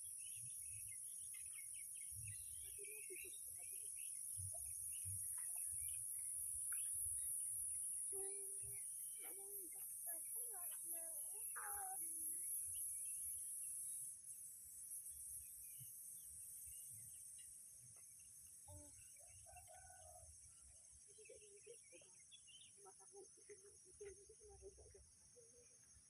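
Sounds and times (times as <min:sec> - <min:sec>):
high-pitched insect drone: 0:02.3 - 0:17.4.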